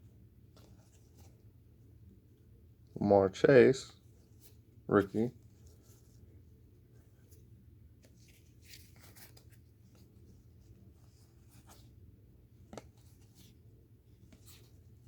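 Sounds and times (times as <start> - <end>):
low room hum: 0.0 - 15.0
trading cards being handled: 3.6 - 15.0.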